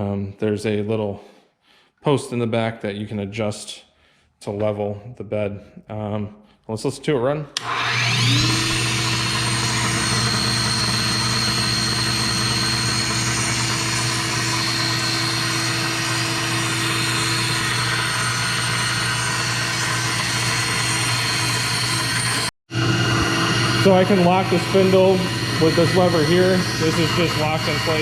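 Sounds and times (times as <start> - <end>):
grinder motor whining: 7.6 - 28.0.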